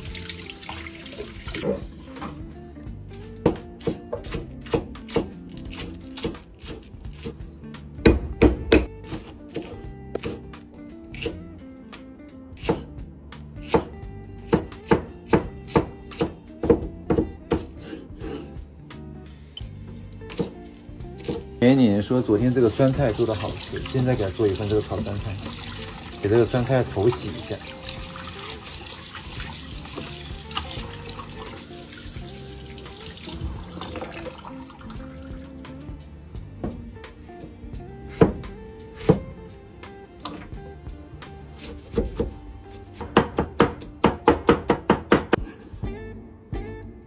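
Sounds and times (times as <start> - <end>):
tap water splashing into sink: 0.0 - 2.4, 22.4 - 35.6
soft background music: 0.0 - 47.0
knife chopping on cutting board: 3.4 - 7.4, 8.0 - 10.5, 11.1 - 11.4, 12.6 - 12.9, 13.6 - 13.9, 14.5 - 18.5, 20.3 - 20.6, 21.2 - 21.5, 36.6 - 36.9, 38.1 - 39.4, 40.2 - 40.5, 41.5 - 45.7.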